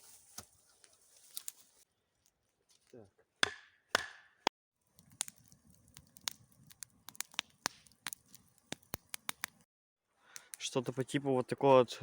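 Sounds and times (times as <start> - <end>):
twigs snapping and crackling: 0.3 - 3.0, 4.9 - 9.7.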